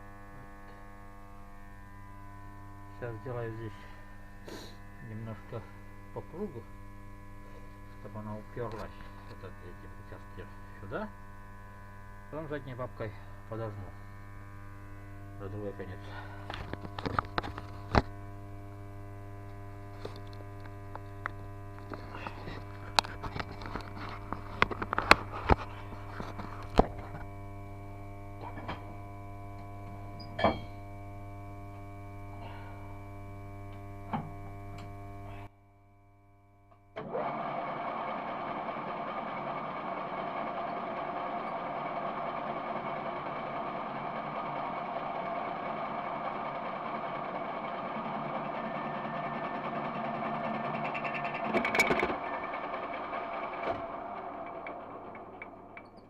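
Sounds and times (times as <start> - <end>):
lathe running with whine: 0.0 - 35.4, 37.0 - 56.0
steady electrical hum: 0.0 - 37.0
sharp knocks and clicks: 49.8 - 52.5.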